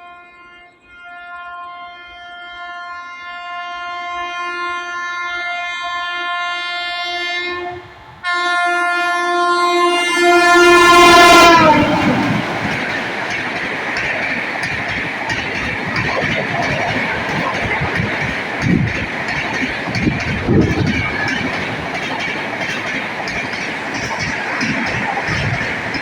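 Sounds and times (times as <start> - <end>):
train horn long note: 0.0 - 12.9
train rumble and clatter: 7.0 - 26.0.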